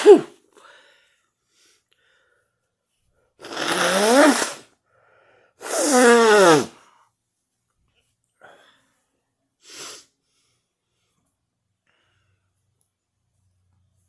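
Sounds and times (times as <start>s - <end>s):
person sneezing: 0.0s - 0.4s, 3.4s - 4.7s, 5.6s - 6.8s.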